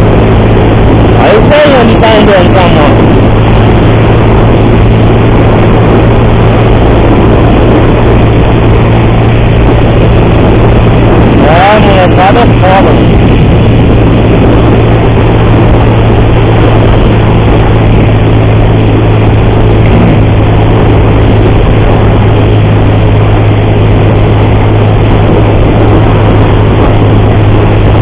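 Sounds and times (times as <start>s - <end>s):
motorcycle engine running: 0.0s - 28.0s
wind and road noise: 0.0s - 28.0s
person talking: 1.2s - 3.0s, 11.4s - 13.1s.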